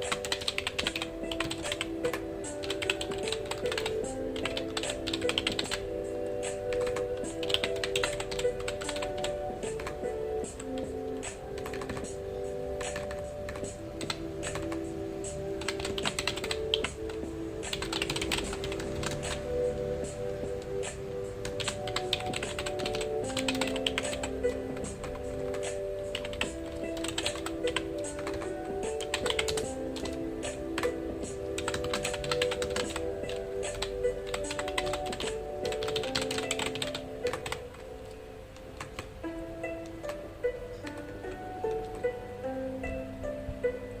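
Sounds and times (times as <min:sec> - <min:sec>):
fast typing on keyboard: 0:00.0 - 0:05.8, 0:06.6 - 0:12.2, 0:12.8 - 0:14.8, 0:15.6 - 0:19.6, 0:21.4 - 0:37.9, 0:38.8 - 0:39.1
soft background music: 0:00.0 - 0:44.0.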